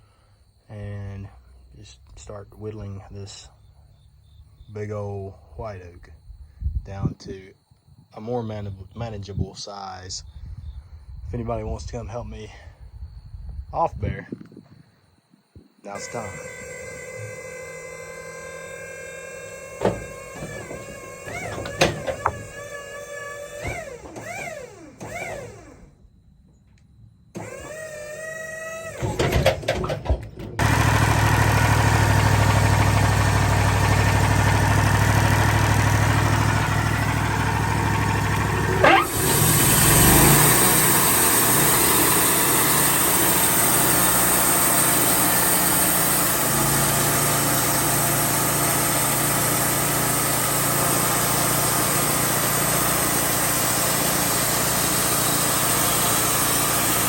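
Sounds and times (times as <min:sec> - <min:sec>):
sawmill engine running: 0:15.9 - 0:25.9, 0:27.3 - 0:57.0
sharp clunk: 0:19.8 - 0:22.6.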